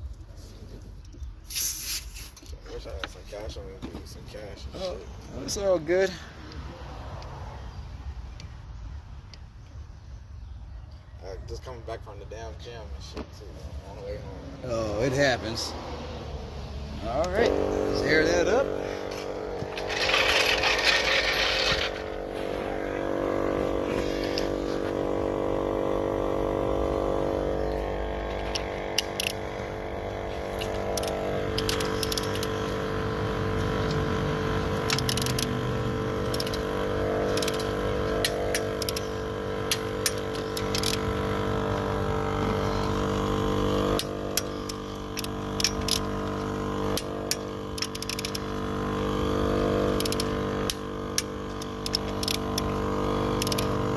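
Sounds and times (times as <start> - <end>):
air hissing: 1.4 - 2.5, 19.7 - 25.6
air compressor motor hum: 12.3 - 53.9
small clicks: 30.5 - 32.8, 34.8 - 36.7, 37.3 - 41.4, 43.8 - 48.6, 49.8 - 53.9.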